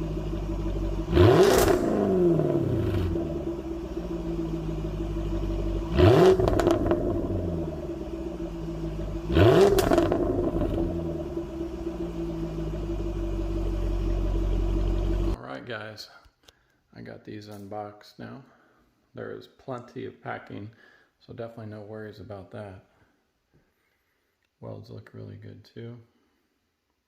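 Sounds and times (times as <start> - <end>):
car engine idling and revving: 0.0 - 15.4.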